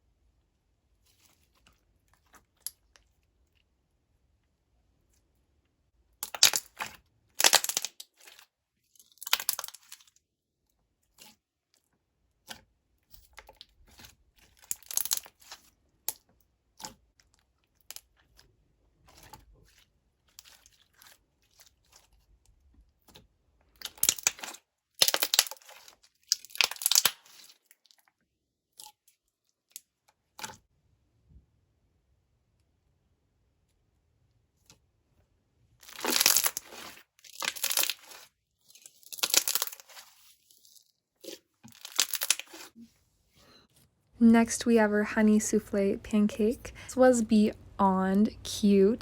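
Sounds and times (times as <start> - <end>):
slime crackling and popping: 6.2 - 8.4, 9.0 - 10.1, 13.4 - 16.2, 23.8 - 27.7, 35.8 - 42.8.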